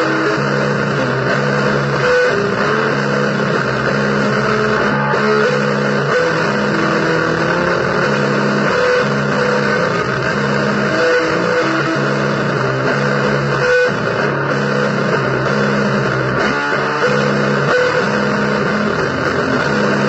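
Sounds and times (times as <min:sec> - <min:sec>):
electric guitar blues notes: 0:00.0 - 0:20.0.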